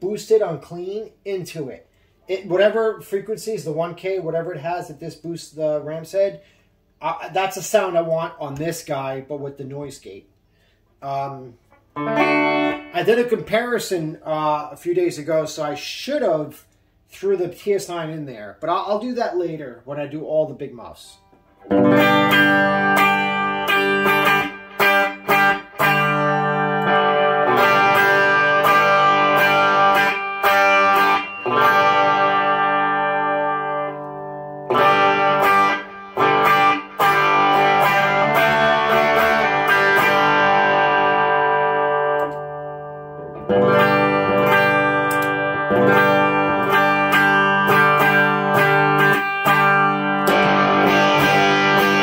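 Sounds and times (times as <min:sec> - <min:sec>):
electric guitar chords: 0:11.7 - 0:13.5, 0:21.3 - 0:52.0.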